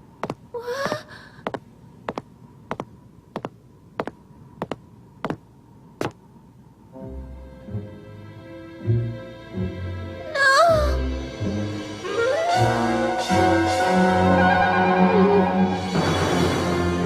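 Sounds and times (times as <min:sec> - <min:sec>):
faint high hum: 0:00.0 - 0:11.3
low music: 0:06.9 - 0:17.0.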